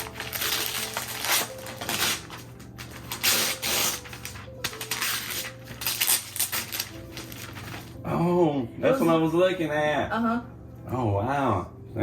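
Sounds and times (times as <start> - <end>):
wrapping paper tearing: 0.0 - 8.1.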